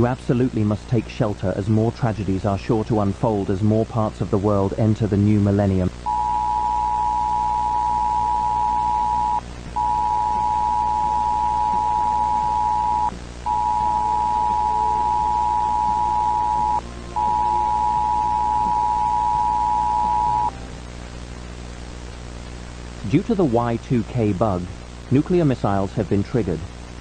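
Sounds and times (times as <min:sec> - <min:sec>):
low droning hum: 0:05.8 - 0:23.3
two-note electronic tone beeps: 0:06.1 - 0:20.7.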